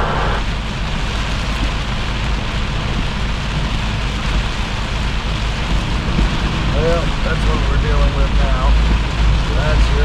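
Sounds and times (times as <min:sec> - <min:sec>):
heavy rain on truck cab: 0:00.0 - 0:10.0
truck engine rumble: 0:00.0 - 0:10.0.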